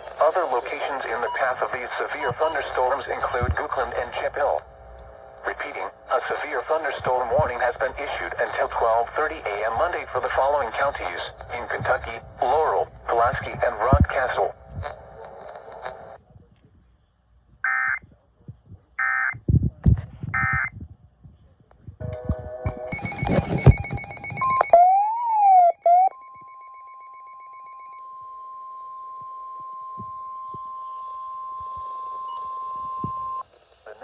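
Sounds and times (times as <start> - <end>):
data bursts: 0.7 - 15.2, 22.7 - 26.5
steady warning alarm tone: 1.1 - 5.3, 22.9 - 29.5
beeps and knocks: 2.2 - 2.7, 22.7 - 24.9.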